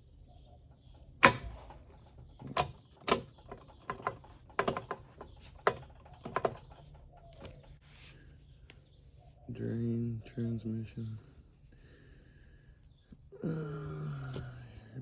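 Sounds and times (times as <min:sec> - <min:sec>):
knocks and clicks on metal: 0:01.2 - 0:07.3.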